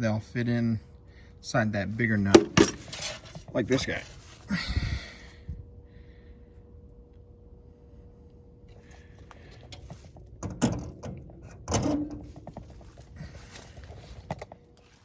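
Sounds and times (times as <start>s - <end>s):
faint steady hum: 0.0s - 15.0s
loud clunks: 2.3s - 3.5s
objects clicking and knocking: 2.3s - 3.6s.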